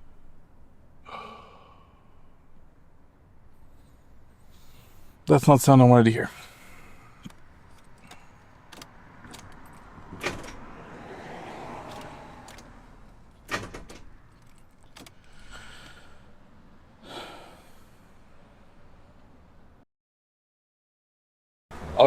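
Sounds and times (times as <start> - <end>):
keys jingling: 7.2 - 10.6, 11.8 - 15.4
sharp clicks and knocks: 7.2 - 10.7.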